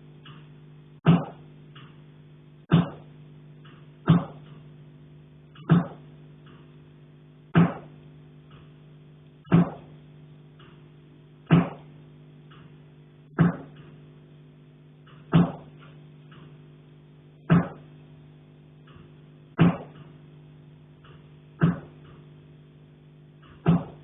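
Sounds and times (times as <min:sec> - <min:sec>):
low hum: 0:00.0 - 0:24.0
sharp knocks on a pipe: 0:01.0 - 0:01.4, 0:02.7 - 0:03.1, 0:04.0 - 0:04.6, 0:05.6 - 0:06.0, 0:07.5 - 0:07.9, 0:09.4 - 0:09.9, 0:11.5 - 0:11.9, 0:13.3 - 0:13.8, 0:15.3 - 0:15.8, 0:17.5 - 0:17.8, 0:19.6 - 0:20.1, 0:21.0 - 0:22.2, 0:23.4 - 0:24.0.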